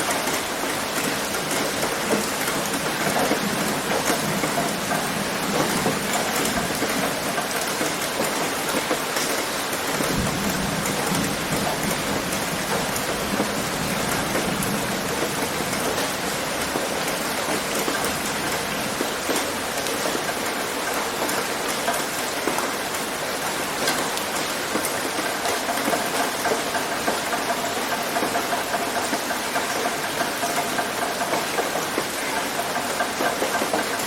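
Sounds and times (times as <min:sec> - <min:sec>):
rain on a tin roof: 0:00.0 - 0:34.0.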